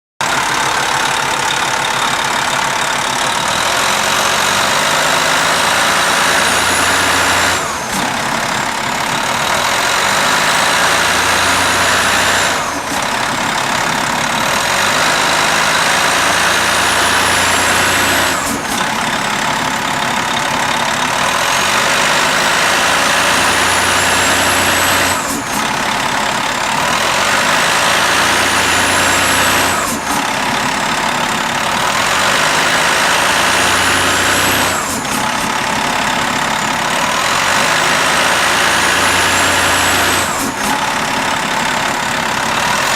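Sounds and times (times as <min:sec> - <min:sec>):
engine revving with high whine: 0:03.2 - 0:19.7, 0:20.5 - 0:30.9, 0:31.6 - 0:41.6.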